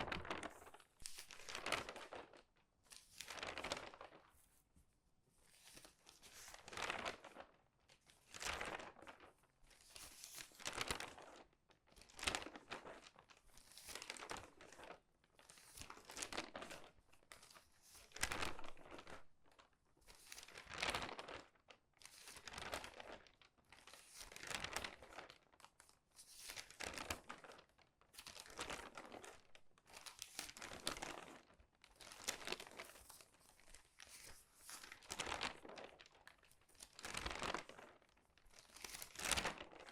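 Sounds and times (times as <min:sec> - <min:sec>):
newspaper pages turning: 0:00.0 - 0:02.4, 0:03.1 - 0:04.3, 0:05.7 - 0:07.5, 0:26.6 - 0:27.6, 0:28.2 - 0:29.4, 0:30.0 - 0:39.9.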